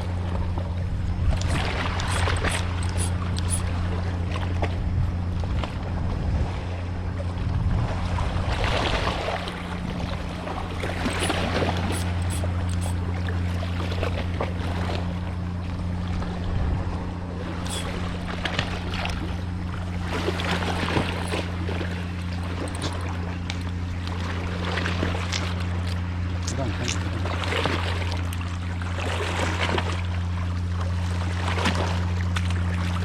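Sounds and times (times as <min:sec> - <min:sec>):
boat engine humming: 0:00.0 - 0:33.0
wind: 0:00.0 - 0:33.0
water rushing: 0:01.2 - 0:04.1, 0:08.0 - 0:15.2, 0:17.0 - 0:30.1.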